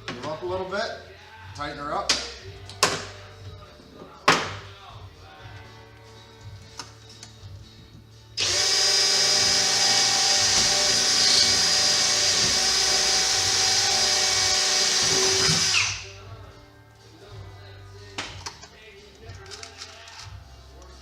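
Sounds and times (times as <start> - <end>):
power drill drilling through metal: 8.4 - 16.0.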